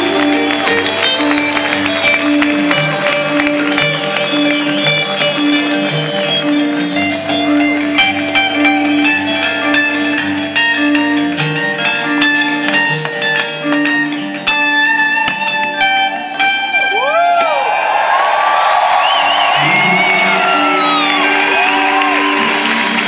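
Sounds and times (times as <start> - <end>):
crowd whooping: 0.0 - 8.0, 16.1 - 23.0
guitar picking quick notes: 0.0 - 17.9
live band instrumental music: 0.0 - 18.1, 19.4 - 23.0.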